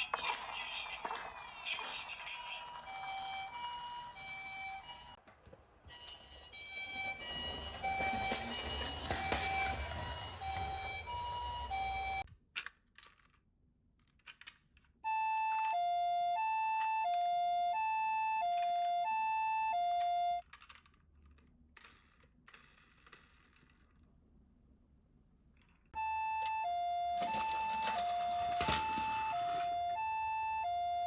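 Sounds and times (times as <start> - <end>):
toy two-tone siren: 1.8 - 5.2, 5.9 - 12.3, 15.1 - 20.4, 26.0 - 31.0.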